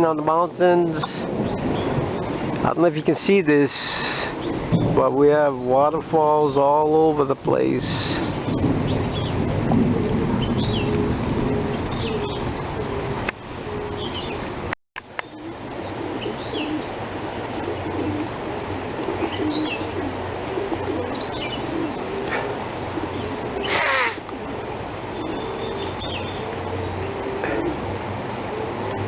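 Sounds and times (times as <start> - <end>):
heavy rain hissing: 0.8 - 14.7, 15.3 - 29.0
loud sweeping bird call: 3.7 - 7.0, 7.8 - 14.6, 15.2 - 27.8
low cooing bird calls: 3.7 - 7.0, 7.8 - 29.0.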